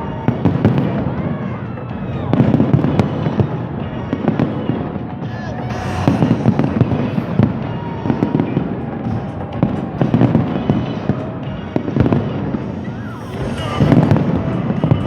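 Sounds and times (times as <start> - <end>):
fireworks bursts and crackles: 0.0 - 15.0.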